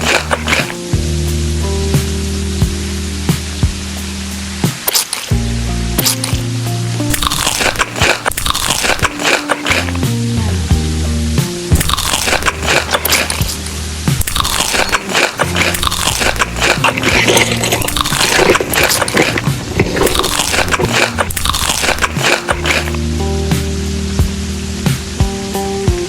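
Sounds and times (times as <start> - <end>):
crunchy chewing: 0.0 - 0.8, 4.8 - 5.3, 6.0 - 6.4, 7.1 - 10.0, 11.8 - 23.0
background music: 0.0 - 26.0.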